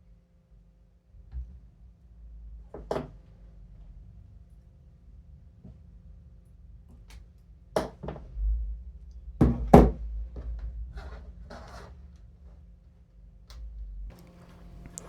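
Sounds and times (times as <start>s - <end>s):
light clicks: 14.1s - 15.0s
rustling: 14.1s - 15.0s.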